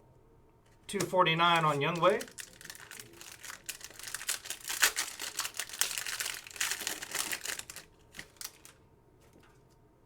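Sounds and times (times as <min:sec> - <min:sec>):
foil wrapper crinkling and tearing: 0:01.5 - 0:08.8.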